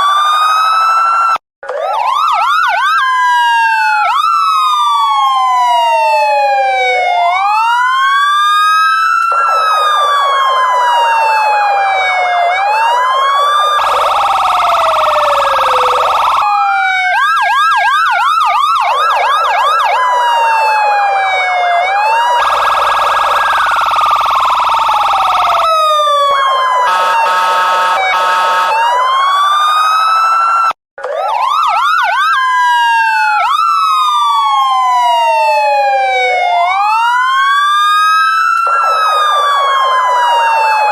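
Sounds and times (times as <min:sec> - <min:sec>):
police siren wailing: 0:00.0 - 0:40.9
police siren yelp: 0:00.0 - 0:40.9
buzzing horn-like siren tone: 0:26.7 - 0:30.7.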